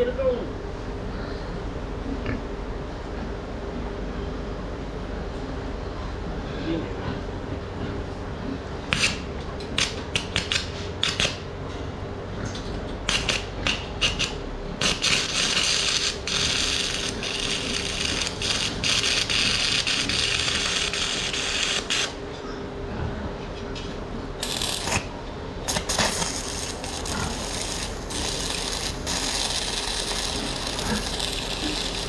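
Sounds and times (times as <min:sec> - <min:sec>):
arc welding crackle: 0:08.9 - 0:11.5, 0:13.0 - 0:22.2, 0:24.4 - 0:32.0.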